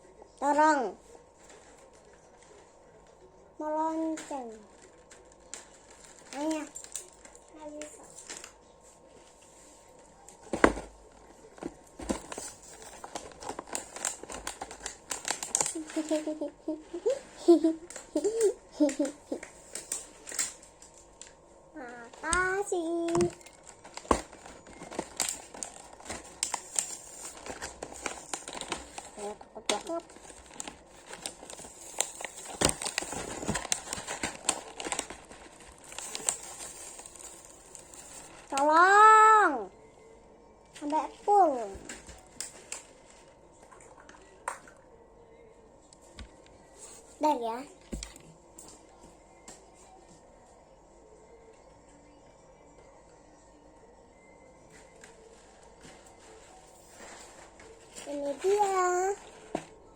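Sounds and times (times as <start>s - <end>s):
packaging clicks and rustles: 4.2s - 38.7s, 40.8s - 44.7s, 54.7s - 59.9s.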